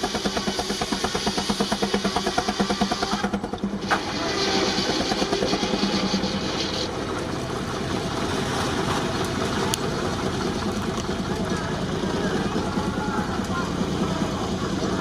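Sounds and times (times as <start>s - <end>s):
high steam hiss: 0.0s - 6.9s
steam sawmill machinery running: 0.0s - 15.0s.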